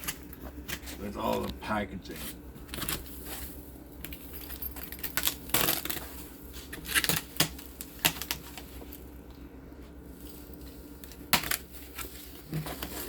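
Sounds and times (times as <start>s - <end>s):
packaging clicks rustles and knocks: 2.6s - 9.1s.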